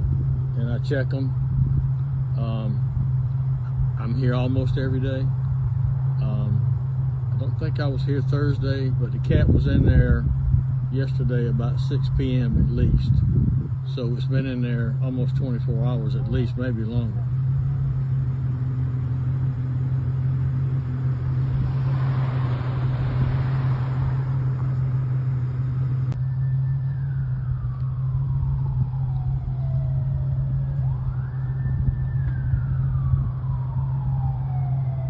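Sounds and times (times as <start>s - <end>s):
emergency vehicle siren wailing: 0.0s - 35.0s
steady low hum: 0.0s - 35.0s
vehicle passing: 16.6s - 35.0s.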